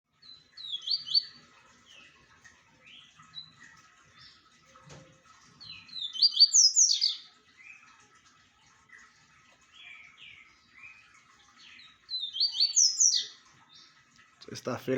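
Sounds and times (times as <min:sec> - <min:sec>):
seedeater bird singing: 0:00.2 - 0:02.2, 0:05.6 - 0:07.9, 0:09.7 - 0:14.0.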